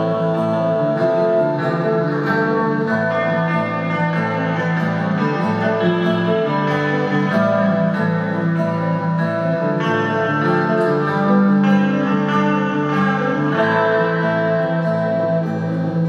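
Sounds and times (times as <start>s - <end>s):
droning chords: 0.0s - 16.0s
plucked strings: 0.0s - 16.0s.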